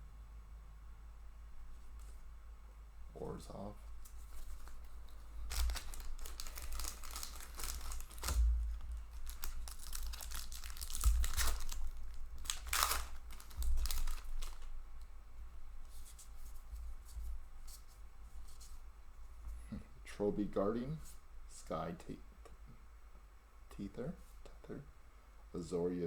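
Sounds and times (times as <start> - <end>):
foil wrapper tearing and crinkling: 4.0 - 14.8.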